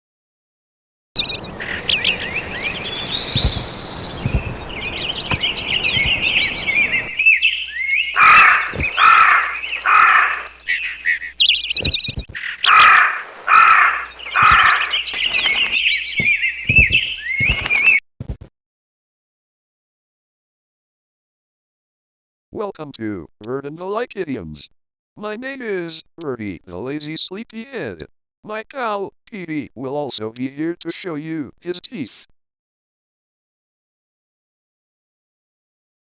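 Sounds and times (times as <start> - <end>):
birds chirping and singing: 1.2 - 18.0.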